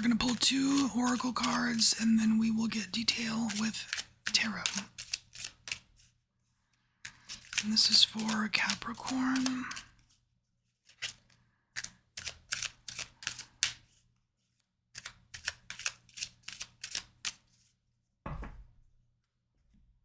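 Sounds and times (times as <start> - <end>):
cards being shuffled: 0.0 - 6.1, 7.0 - 10.2, 10.8 - 14.0, 15.0 - 17.5
deck knocking on table: 18.3 - 18.7.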